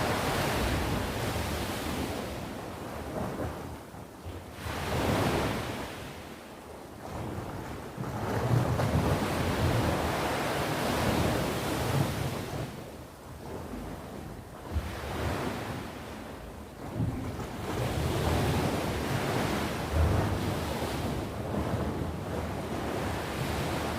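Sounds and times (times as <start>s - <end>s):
ocean waves breaking on shore: 0.0s - 23.9s
wind buffeting microphone: 7.0s - 23.9s.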